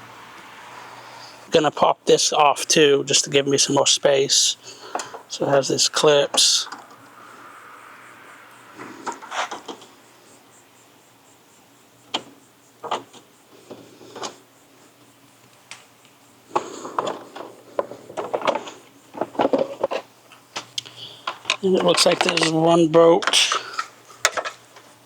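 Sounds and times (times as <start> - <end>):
plastic panel rattling and rubbing: 16.5 - 20.7.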